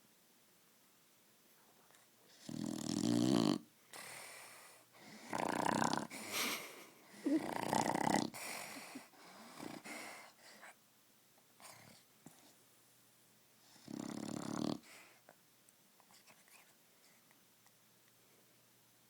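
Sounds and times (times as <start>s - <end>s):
dog snoring: 2.3s - 6.4s, 7.2s - 10.3s, 13.6s - 15.2s.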